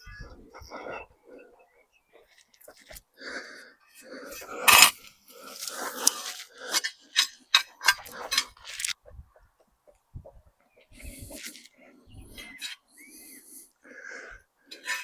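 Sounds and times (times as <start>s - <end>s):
spade digging in soil: 4.4s - 9.0s.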